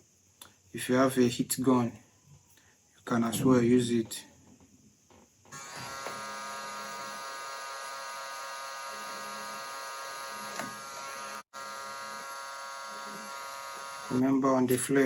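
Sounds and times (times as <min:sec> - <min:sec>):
heat gun motor whine: 0:05.5 - 0:14.4.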